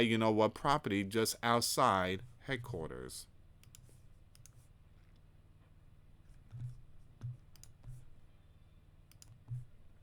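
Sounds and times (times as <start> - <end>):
computer mouse clicks: 3.6 - 5.2, 6.5 - 8.0, 9.1 - 9.7.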